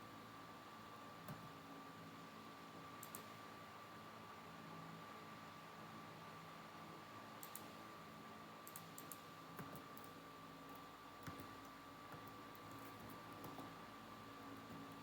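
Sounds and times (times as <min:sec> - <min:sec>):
computer clicking: 0:03.0 - 0:03.3, 0:07.4 - 0:07.7, 0:08.6 - 0:13.7.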